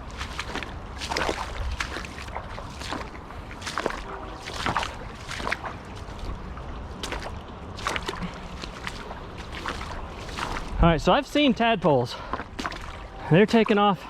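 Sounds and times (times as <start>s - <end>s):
wind rumble on microphone: 0.0s - 11.7s
footsteps splashing in water: 0.0s - 13.8s.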